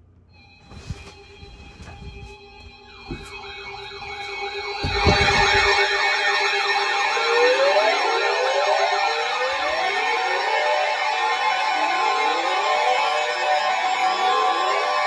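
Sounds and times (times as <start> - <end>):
electronic siren wailing: 3.1 - 15.0.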